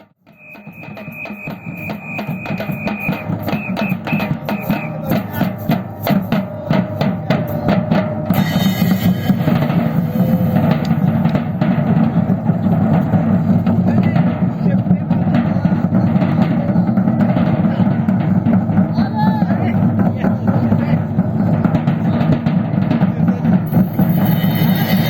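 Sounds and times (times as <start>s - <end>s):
batucada percussion ensemble: 0.0s - 25.0s
hissing percussion: 0.0s - 25.0s
high whistle blasts: 0.2s - 5.1s
low bass drums: 0.8s - 25.0s.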